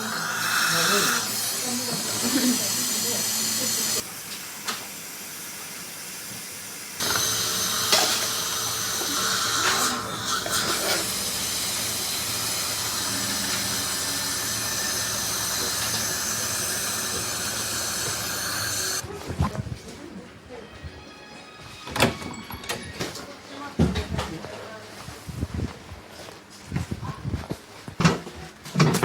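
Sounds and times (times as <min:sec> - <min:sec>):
dental equipment hissing: 0:00.0 - 0:19.0.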